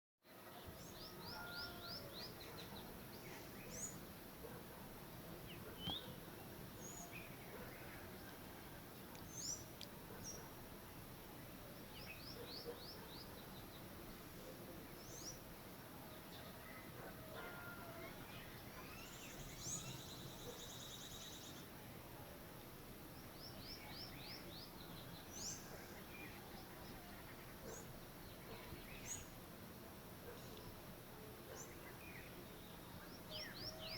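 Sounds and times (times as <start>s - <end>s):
birds chirping: 5.4s - 8.4s, 23.2s - 29.4s.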